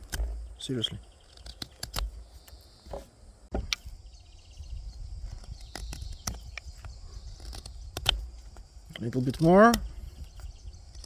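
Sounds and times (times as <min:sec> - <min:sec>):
knife cutting wood: 0:00.0 - 0:04.0, 0:05.2 - 0:11.0.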